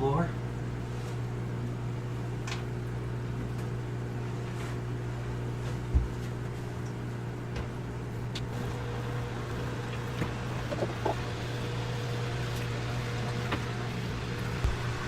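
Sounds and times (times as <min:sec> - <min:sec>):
pump humming: 0:00.0 - 0:15.0
water running through pipes: 0:08.2 - 0:15.0.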